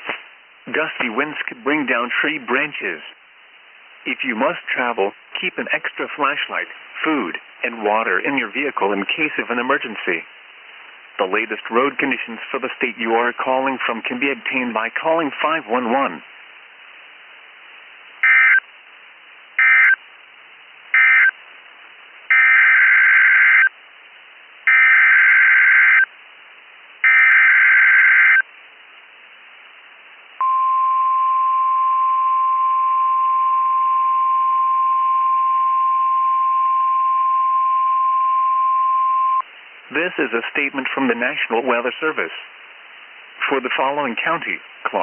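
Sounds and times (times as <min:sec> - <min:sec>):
steady high alarm tone: 0:22.3 - 0:23.7, 0:24.7 - 0:26.1, 0:27.0 - 0:28.4
screeching digital data bursts: 0:24.7 - 0:26.1, 0:27.0 - 0:28.4.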